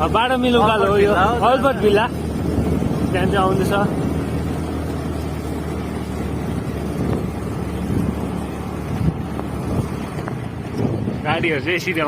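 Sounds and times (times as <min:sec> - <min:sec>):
scooter engine running: 0:00.0 - 0:11.8
wind buffeting microphone: 0:00.0 - 0:12.0.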